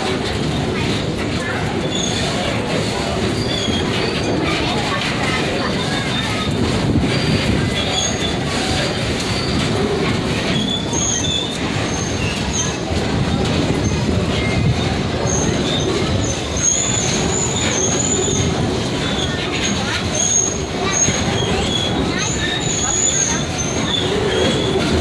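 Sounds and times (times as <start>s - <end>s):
train cars rumbling: 0.0s - 25.0s
high wheel squeals: 3.2s - 4.7s, 5.5s - 25.0s.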